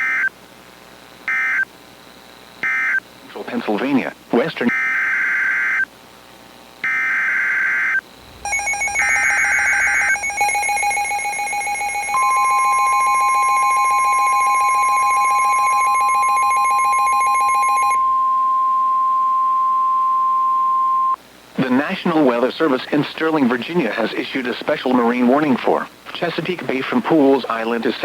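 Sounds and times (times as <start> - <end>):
steady warning alarm tone: 6.8 - 21.2
buzzy pulsing attention tone: 8.0 - 13.2
raspy digital data bursts: 8.2 - 18.0.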